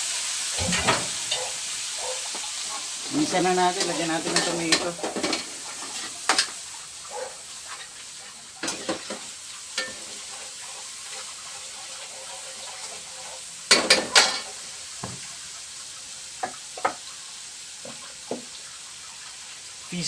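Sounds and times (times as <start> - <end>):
food sizzling in hot oil: 0.0 - 20.0
metal spatula scraping a pan: 0.2 - 14.6.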